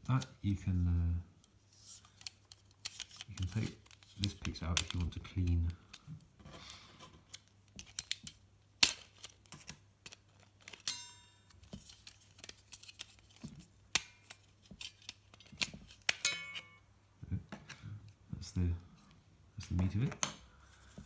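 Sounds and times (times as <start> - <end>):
sharp plastic snap: 7.8 - 9.3.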